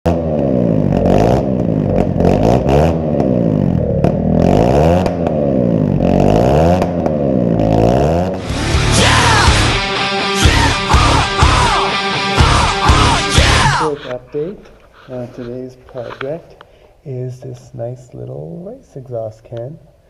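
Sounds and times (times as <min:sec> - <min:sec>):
motorcycle engine revving: 0:00.1 - 0:13.9.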